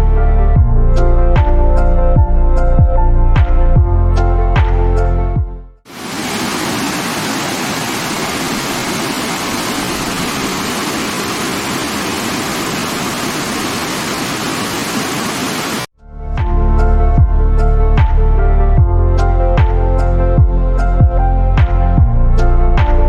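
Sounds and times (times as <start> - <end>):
waterfall rushing: 5.9 - 15.9
electronic background music: 16.0 - 23.0.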